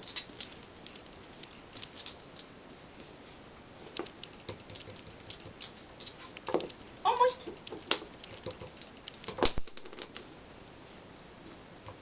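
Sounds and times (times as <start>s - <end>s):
dog moving clicks and taps: 3.9s - 10.2s.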